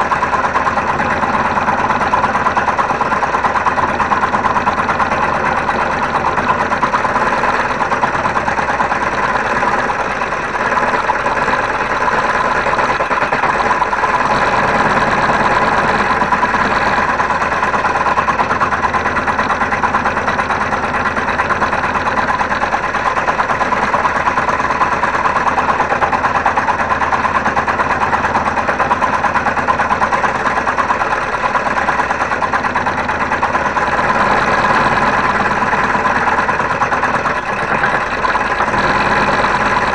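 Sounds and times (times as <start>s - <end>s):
scroll saw cutting wood: 21.0s - 39.9s.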